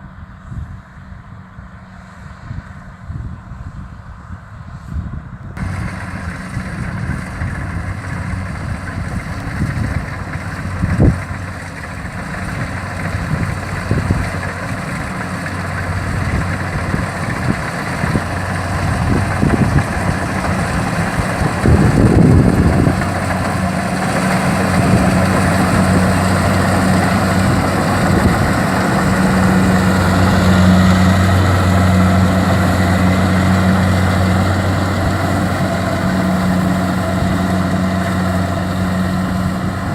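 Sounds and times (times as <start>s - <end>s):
short rough rumble: 4.8s - 39.9s
diesel engine running: 5.5s - 39.9s.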